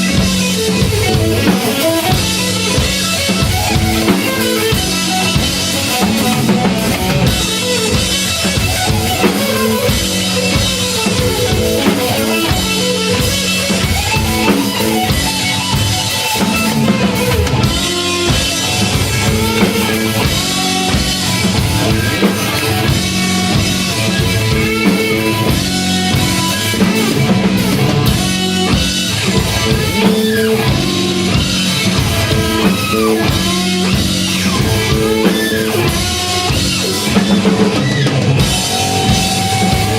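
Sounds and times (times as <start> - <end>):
drum kit steady beat: 0.0 - 39.9
electric guitar: 0.0 - 39.9.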